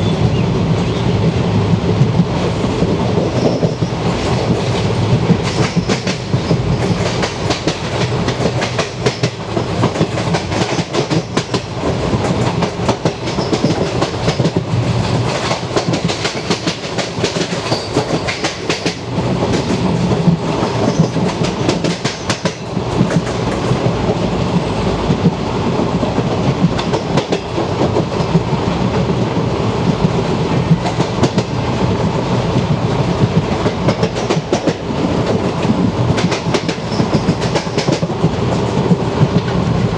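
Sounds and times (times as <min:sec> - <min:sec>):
train wheels clattering over rail joints: 0:02.0 - 0:24.6, 0:26.0 - 0:39.6.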